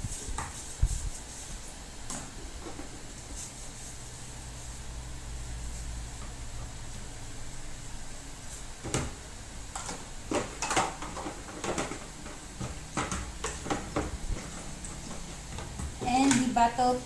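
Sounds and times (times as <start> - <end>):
plastic parts knocking and scraping: 9.8 - 16.6.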